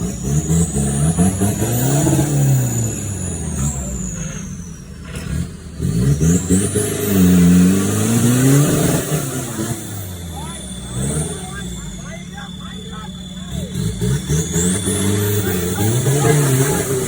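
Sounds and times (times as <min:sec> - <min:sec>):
engine revving: 0:00.0 - 0:17.0
high whistle sweeping: 0:08.6 - 0:17.0.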